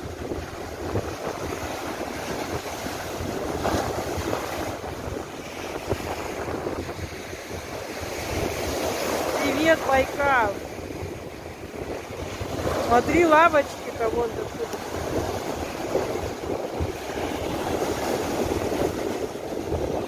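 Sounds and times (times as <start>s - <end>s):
lake waves breaking on shore: 0.0s - 20.0s
wind buffeting microphone: 0.0s - 20.0s.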